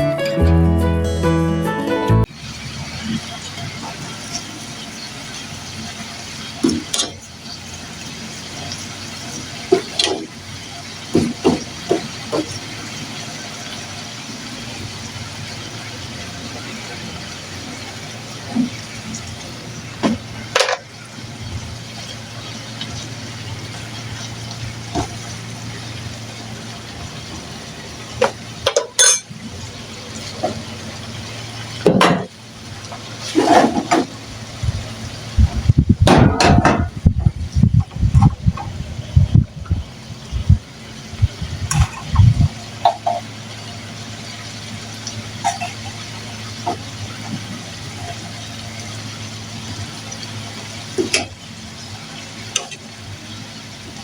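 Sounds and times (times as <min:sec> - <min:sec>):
food sizzling in a pan: 0:02.3 - 0:33.4
pots and utensils clattering: 0:02.9 - 0:07.4, 0:08.2 - 0:14.8, 0:16.6 - 0:21.1, 0:21.9 - 0:35.0, 0:36.0 - 0:38.8, 0:41.6 - 0:43.7, 0:45.3 - 0:48.6, 0:50.9 - 0:51.4, 0:52.5 - 0:52.9
utensil clinking against pan: 0:28.7 - 0:29.3
steady low hum: 0:34.2 - 0:42.9
low thumps: 0:34.6 - 0:42.6.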